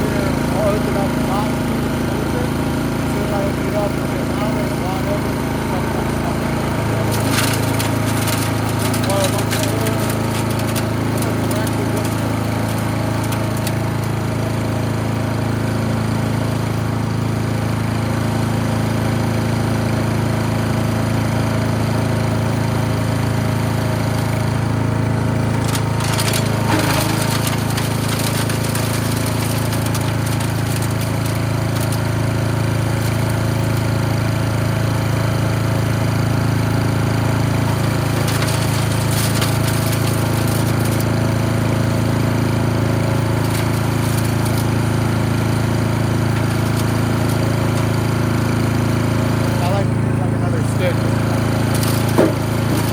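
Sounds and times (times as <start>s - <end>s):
chipper shredder engine running: 0.0s - 52.9s
burst of clatter: 3.1s - 14.3s, 25.0s - 34.0s, 37.0s - 52.9s.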